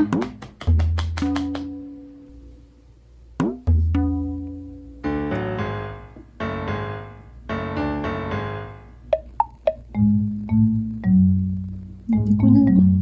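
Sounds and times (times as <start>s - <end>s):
piano music: 5.0s - 13.0s.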